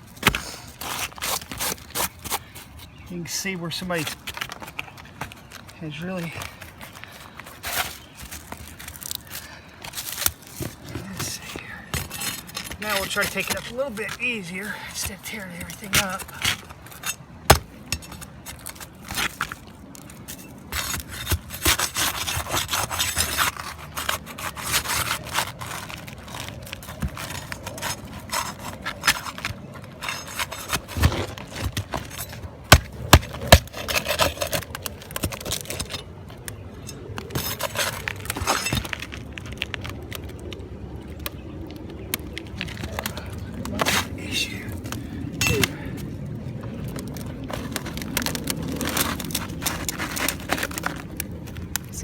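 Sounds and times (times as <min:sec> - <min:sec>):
shingles scraping and crackling: 0:00.0 - 0:52.0.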